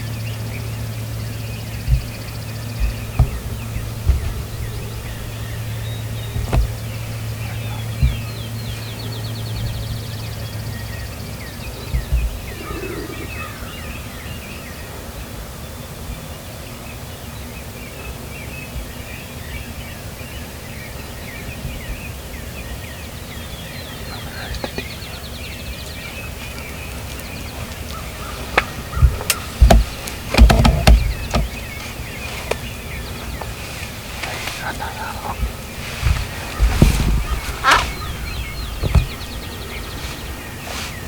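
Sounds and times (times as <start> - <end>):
low thumps: 0.0 - 13.5, 24.5 - 41.0
songbirds chirping and trilling: 0.0 - 41.0
steady low hum: 0.0 - 41.0.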